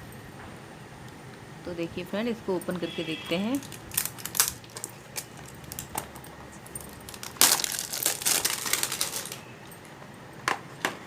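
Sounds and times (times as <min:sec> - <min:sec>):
packaging crinkling and rustling: 0:03.6 - 0:09.8.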